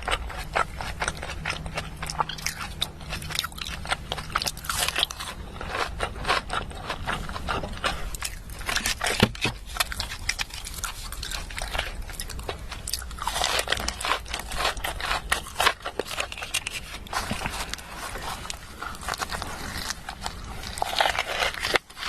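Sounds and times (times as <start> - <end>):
chewing crunchy food: 0.0 - 22.0.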